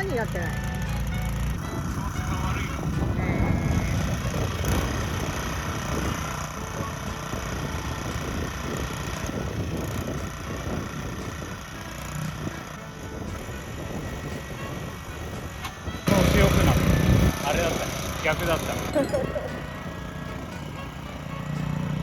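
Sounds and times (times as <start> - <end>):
small petrol engine running: 0.0 - 22.0.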